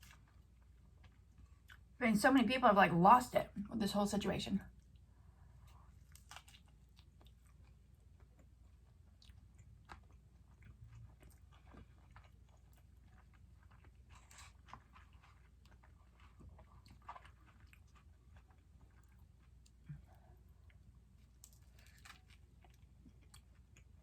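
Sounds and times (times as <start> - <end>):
person chewing: 0.0 - 2.0, 4.8 - 24.0
small crunches: 5.6 - 7.7, 9.2 - 19.9, 21.2 - 23.9.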